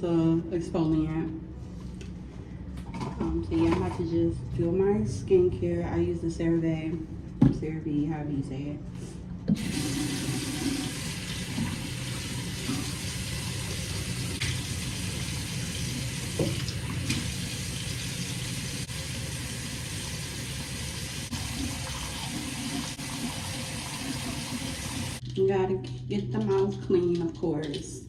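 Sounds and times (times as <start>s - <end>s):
sink tap turning on: 9.6s - 25.2s
water running into basin: 9.6s - 25.2s.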